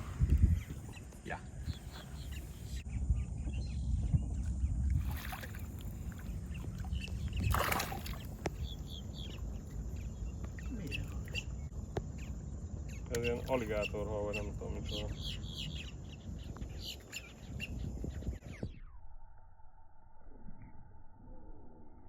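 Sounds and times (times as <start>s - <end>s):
steady low rumble: 0.0s - 16.8s
faint high bird chirps: 0.5s - 19.1s.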